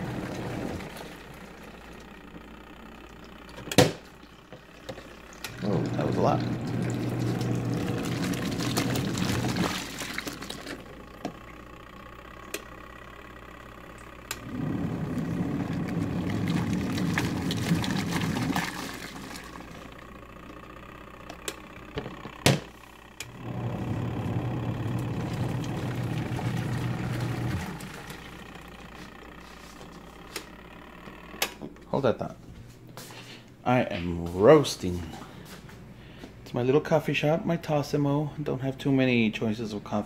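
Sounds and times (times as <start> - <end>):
washing machine churning water: 0.0 - 22.6, 23.2 - 30.5.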